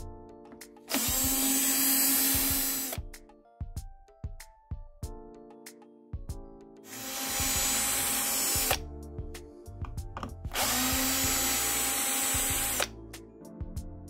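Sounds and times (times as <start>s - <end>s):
power drill running: 0.9s - 3.0s, 6.9s - 8.8s, 10.5s - 12.9s.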